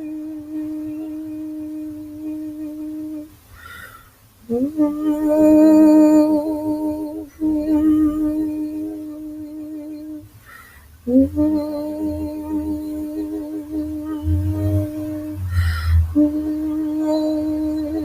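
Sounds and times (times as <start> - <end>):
person humming held notes: 0.0 - 3.4, 4.4 - 10.4, 11.0 - 18.0
breath: 3.4 - 4.3, 10.3 - 11.0, 15.5 - 16.0.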